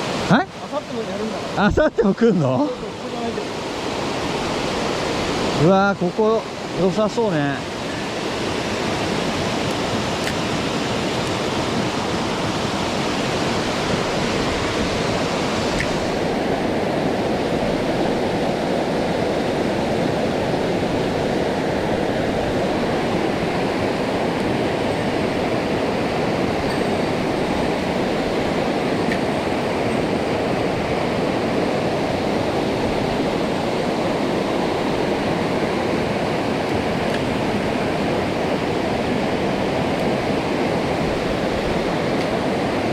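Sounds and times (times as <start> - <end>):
stream rushing over rocks: 0.0 - 42.9.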